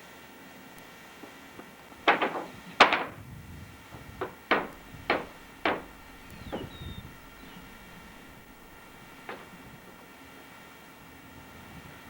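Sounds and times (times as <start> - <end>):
hammer knocking: 4.0 - 9.8.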